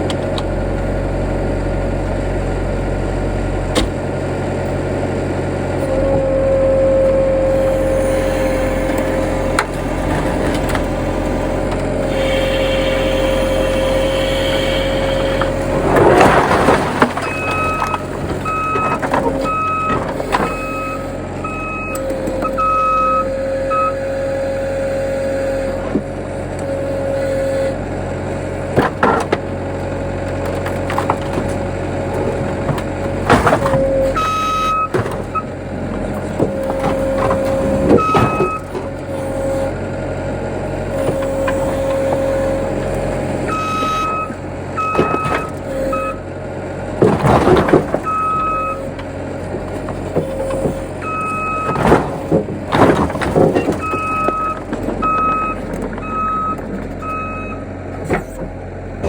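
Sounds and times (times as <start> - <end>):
heavy machine engine running: 0.0 - 59.0
backup alarm beeping: 17.3 - 24.0, 38.0 - 38.7, 53.8 - 57.6.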